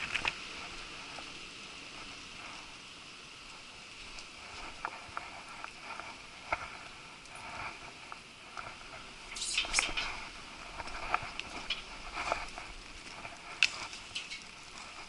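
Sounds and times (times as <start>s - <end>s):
small taps and rustles: 0.0s - 0.4s, 4.1s - 15.0s
rain pattering: 0.0s - 15.0s
scraping rustle: 4.0s - 15.0s.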